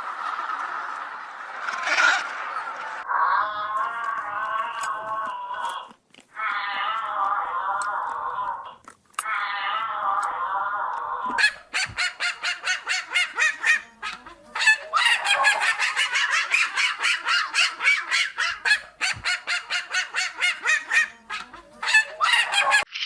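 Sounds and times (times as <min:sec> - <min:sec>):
waterfowl calling: 0:11.4 - 0:22.9.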